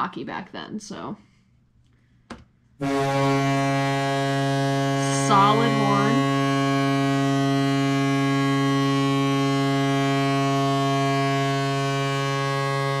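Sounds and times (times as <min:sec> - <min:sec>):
low-pitched goal horn blast: 0:02.8 - 0:13.0.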